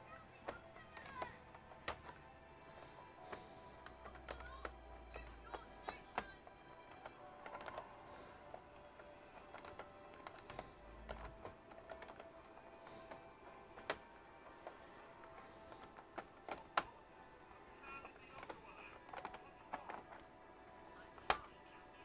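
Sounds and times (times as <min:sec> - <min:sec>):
faint background music: 0:00.0 - 0:22.0
tools and plastic parts clicking: 0:00.1 - 0:21.8.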